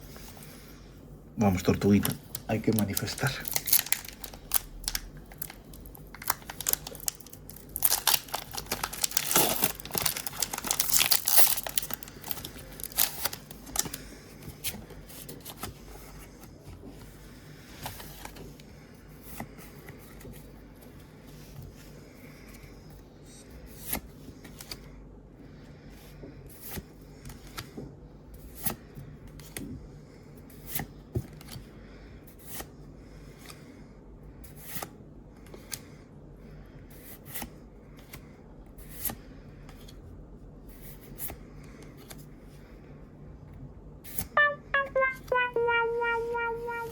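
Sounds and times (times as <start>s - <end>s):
foil wrapper tearing and crinkling: 2.5s - 13.9s.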